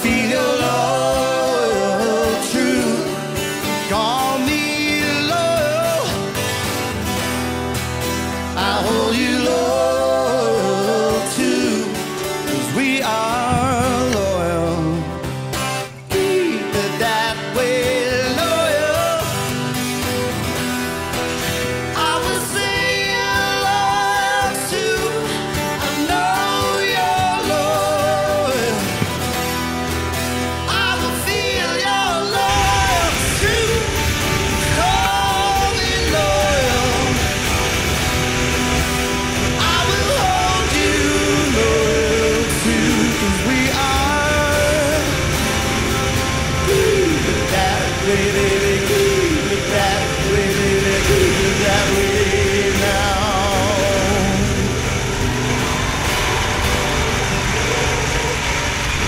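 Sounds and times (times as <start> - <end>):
backing music: 0.0 - 59.0
guitar accompaniment: 0.0 - 59.0.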